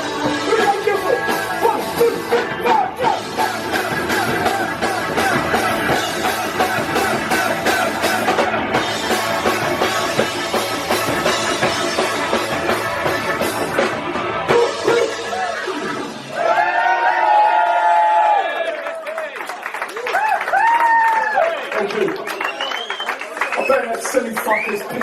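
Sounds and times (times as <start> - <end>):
punk rock band playing: 0.0 - 17.5.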